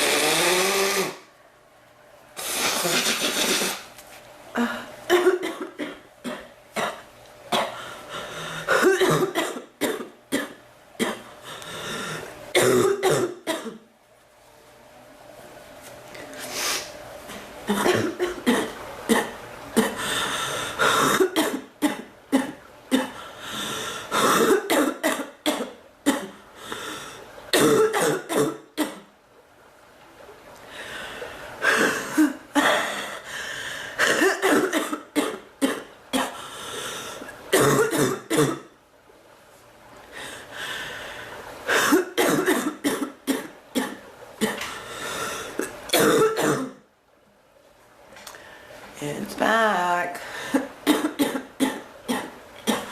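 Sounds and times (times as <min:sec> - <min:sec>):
woman coughing: 0:04.6 - 0:07.8, 0:08.7 - 0:11.3, 0:12.6 - 0:13.8, 0:17.7 - 0:20.0, 0:20.8 - 0:23.2, 0:24.2 - 0:26.4, 0:27.5 - 0:29.1, 0:34.0 - 0:36.4, 0:37.5 - 0:38.7, 0:41.7 - 0:44.7, 0:45.9 - 0:46.8, 0:50.5 - 0:52.9.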